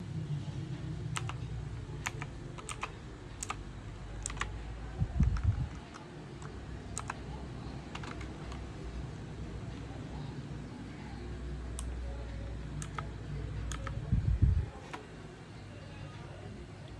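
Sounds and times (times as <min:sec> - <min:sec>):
mechanical keyboard key clicks: 0:01.2 - 0:01.4, 0:02.0 - 0:03.6, 0:04.2 - 0:04.5, 0:05.2 - 0:07.2, 0:12.8 - 0:13.1.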